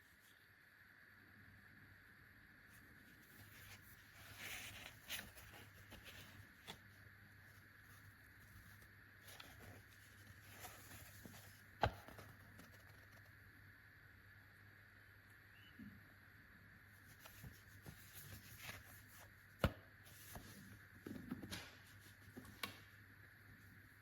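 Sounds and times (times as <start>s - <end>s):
soft rustling of pouch: 2.9s - 13.2s, 17.0s - 19.4s.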